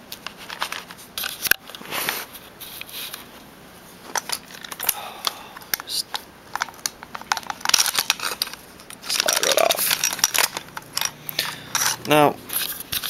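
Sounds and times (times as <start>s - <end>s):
plastic and metal parts scraping: 0.2s - 3.3s, 4.0s - 13.0s.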